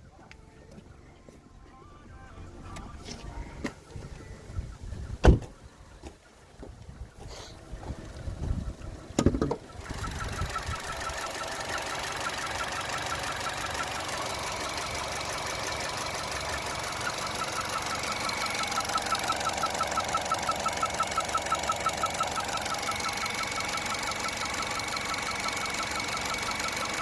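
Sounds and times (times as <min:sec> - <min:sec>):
car engine idling: 0:00.0 - 0:27.0
rhythmic chirping squeak: 0:09.6 - 0:27.0.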